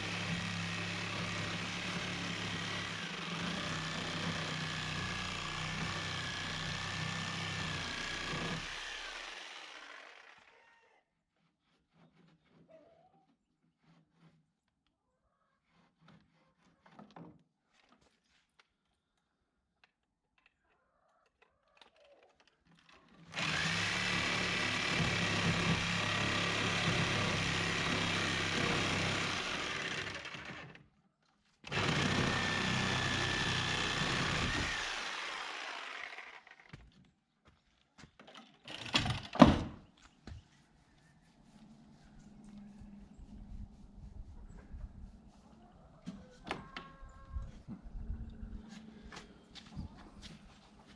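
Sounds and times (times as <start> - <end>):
power tool whining: 0.0 - 10.6, 23.3 - 30.8, 31.7 - 36.8.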